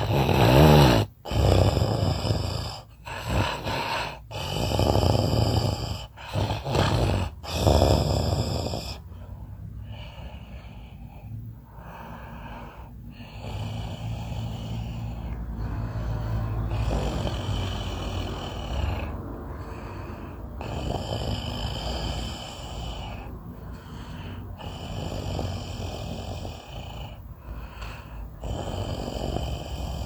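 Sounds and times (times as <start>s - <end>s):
person snoring: 0.0s - 30.0s.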